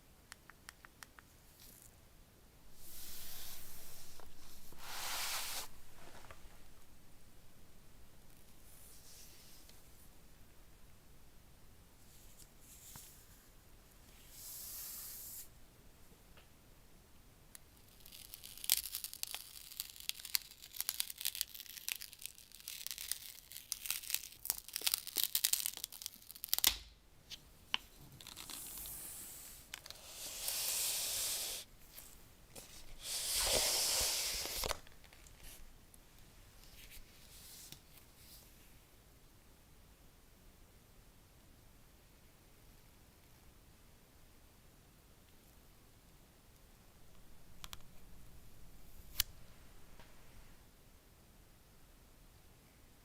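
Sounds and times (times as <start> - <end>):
plastic packaging crackling: 17.9 - 26.8
packaging tearing rips: 18.0 - 26.7, 33.0 - 35.0.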